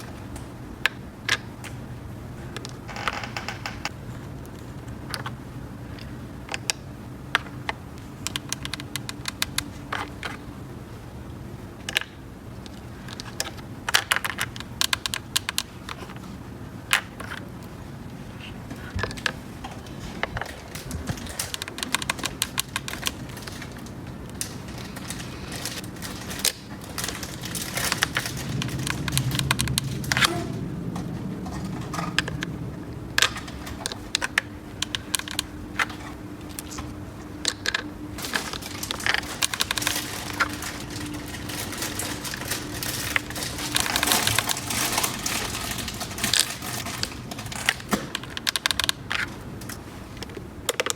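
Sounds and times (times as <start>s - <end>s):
low hum: 23.2s - 47.5s
plastic toy pieces clicking: 37.4s - 49.3s.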